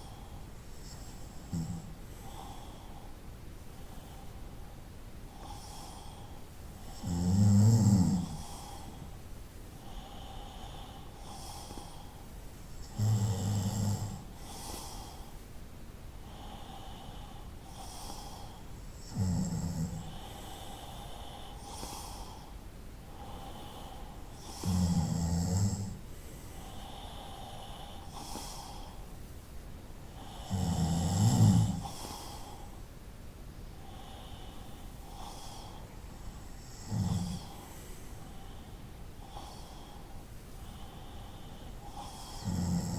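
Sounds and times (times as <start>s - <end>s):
soft breath sounds: 0.0s - 42.9s
low rasping snores: 0.8s - 2.8s, 6.8s - 9.0s, 12.8s - 15.2s, 17.7s - 22.5s, 23.2s - 26.0s, 30.2s - 32.7s, 36.4s - 38.5s, 40.7s - 42.9s.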